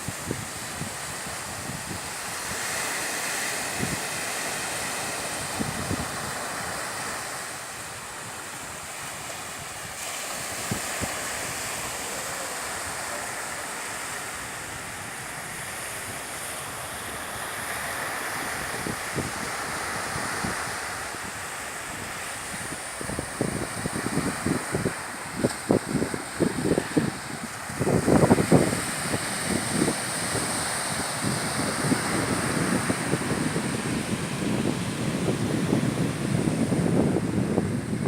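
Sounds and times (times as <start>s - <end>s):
sea waves washing in: 0.0s - 38.0s
wind: 0.0s - 38.0s
wind thumps on microphone: 22.0s - 38.0s.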